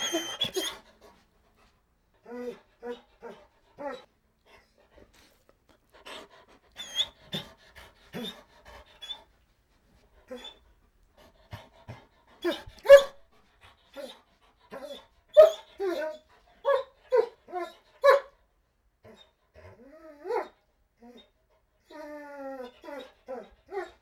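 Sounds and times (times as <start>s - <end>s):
dog whining and whimpering: 0.0s - 0.9s, 2.2s - 4.1s, 6.8s - 7.5s, 8.1s - 8.4s, 9.0s - 9.2s, 10.3s - 10.6s, 14.8s - 17.8s, 19.1s - 24.0s.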